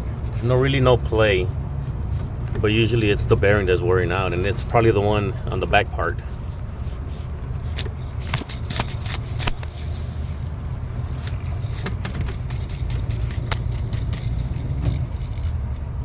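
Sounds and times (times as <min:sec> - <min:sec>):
alternator pulley clicking and scraping: 0:04.2 - 0:15.9.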